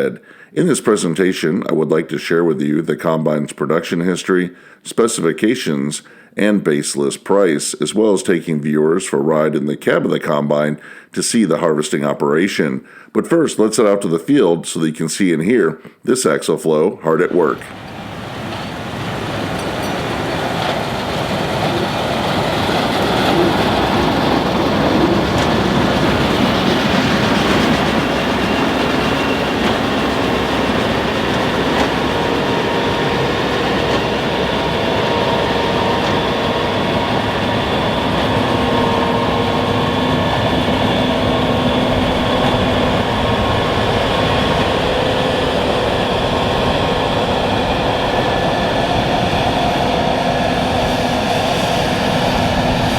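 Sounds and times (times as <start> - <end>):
combine harvester rumbling: 17.2 - 52.9.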